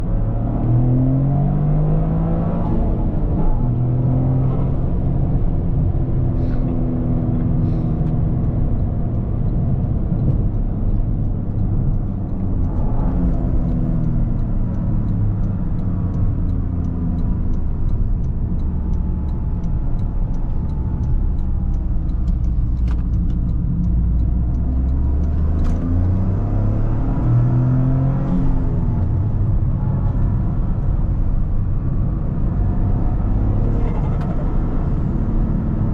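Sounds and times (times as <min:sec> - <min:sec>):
car engine revving: 0:11.2 - 0:35.9.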